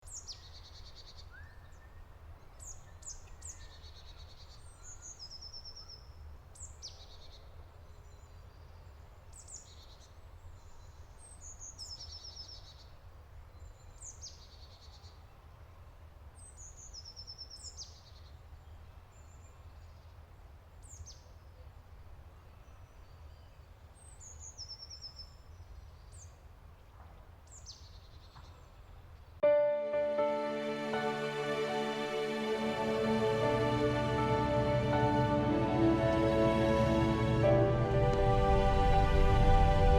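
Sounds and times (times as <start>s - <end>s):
low steady rumble: 33.2s - 39.9s.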